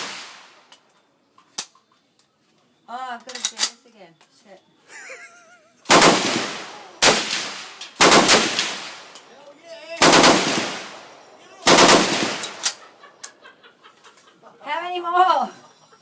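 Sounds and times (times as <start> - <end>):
rifle shots echoing: 0.0 - 0.6, 5.9 - 9.2, 10.0 - 12.9.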